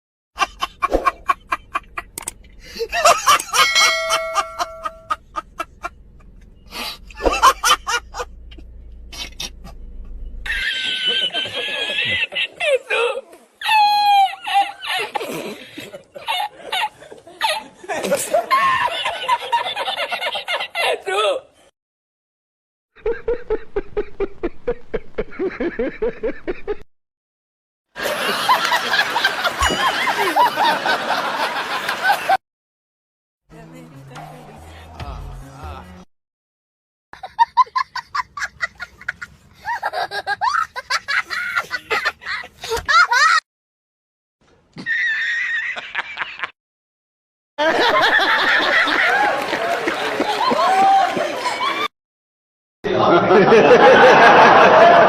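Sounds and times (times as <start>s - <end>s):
comedy laughing sound effects: 0.4s - 21.0s, 23.0s - 26.8s, 28.0s - 32.4s, 34.6s - 36.1s, 37.2s - 43.4s, 47.6s - 49.3s.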